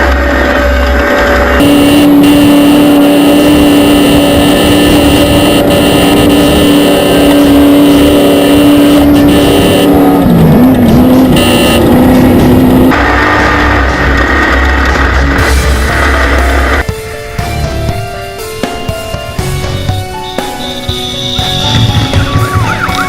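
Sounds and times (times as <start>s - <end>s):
race car engine revving loud: 0.2s - 16.8s.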